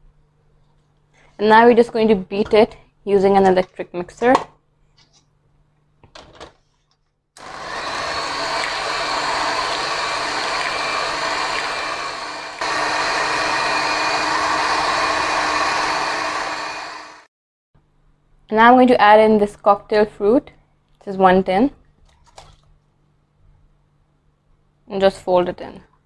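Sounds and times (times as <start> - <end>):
electric hand mixer running: 7.4 - 17.3.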